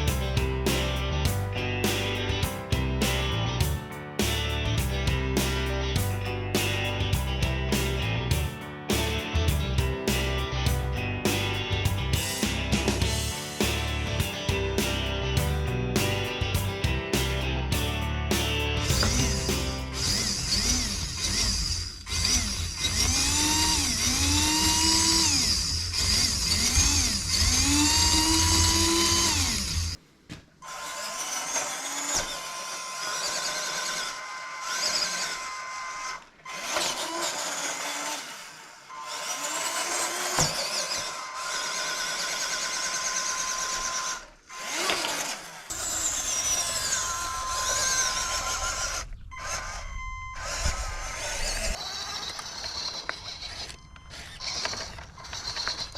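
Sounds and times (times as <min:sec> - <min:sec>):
small electric motor whining: 0:18.8 - 0:30.0, 0:30.6 - 0:55.9.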